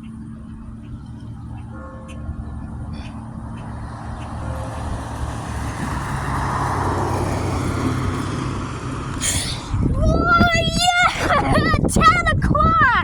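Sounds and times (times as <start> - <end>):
vehicle driving past: 0.0 - 9.9.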